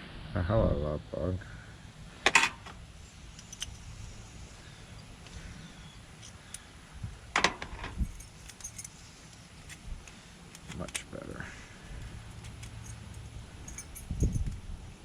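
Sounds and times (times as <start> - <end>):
metal keys jingling: 3.3 - 3.8, 7.4 - 9.8, 12.2 - 14.6.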